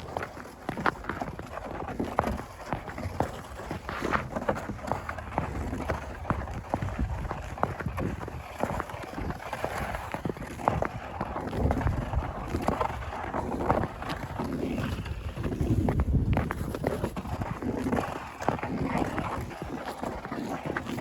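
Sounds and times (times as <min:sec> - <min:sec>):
footsteps crunching through snow: 0:00.0 - 0:21.0
sled pulled over snow: 0:00.0 - 0:21.0
wind rumble on microphone: 0:00.0 - 0:21.0.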